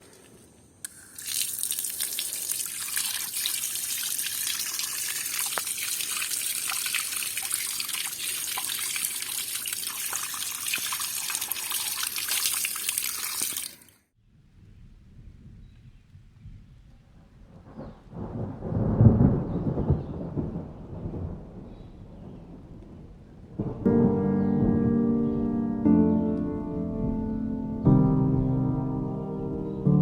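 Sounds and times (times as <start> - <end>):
heavy rain with ticking drops: 1.2 - 11.7.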